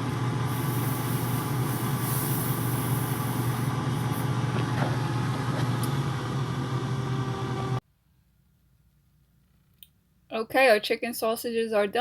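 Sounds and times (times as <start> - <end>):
air fryer fan whoosh: 0.0 - 7.8.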